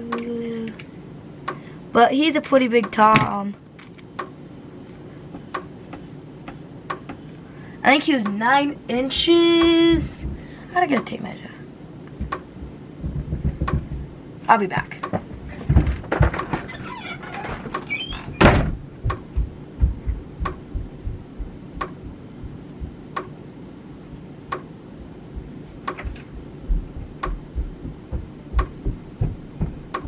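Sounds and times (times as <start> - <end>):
soft low thumps: 9.7 - 10.5, 15.1 - 16.4, 18.7 - 23.2, 24.9 - 30.0
door banging: 15.1 - 18.7
faint steady ticking: 19.0 - 23.4, 24.4 - 30.0.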